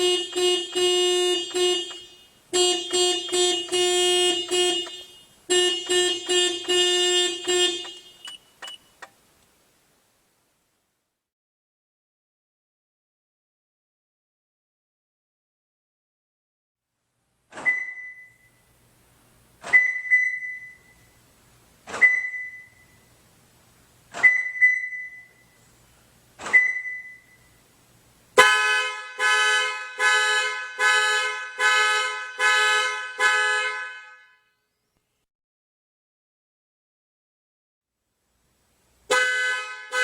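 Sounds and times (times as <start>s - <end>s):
car alarm horn honking: 0.0s - 8.9s, 28.4s - 34.6s, 39.1s - 40.0s.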